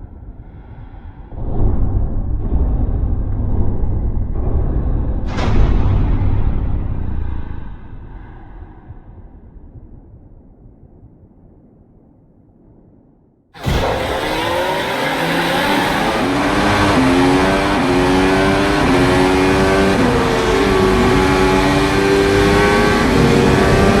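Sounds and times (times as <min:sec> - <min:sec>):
race car engines accelerating: 0:13.6 - 0:24.0.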